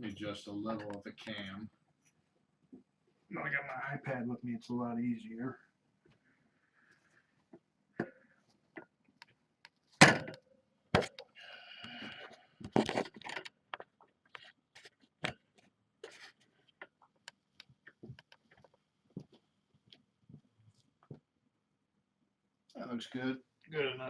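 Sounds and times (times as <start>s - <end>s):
small taps and clicks: 16.8s - 21.3s.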